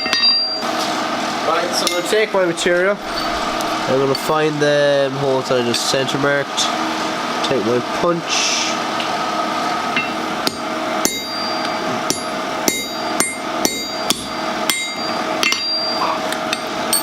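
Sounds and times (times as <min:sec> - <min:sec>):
steady hum: 0:00.0 - 0:17.0
hammer striking a punch on steel: 0:10.0 - 0:17.0.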